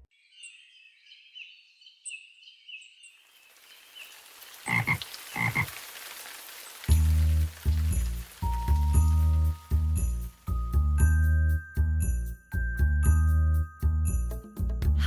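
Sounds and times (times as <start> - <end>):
steady hiss: 3.3 - 10.8
high chirping frog calls: 4.7 - 5.8
loud low frog croaks: 4.7 - 5.8
children's music with beat: 8.5 - 15.0.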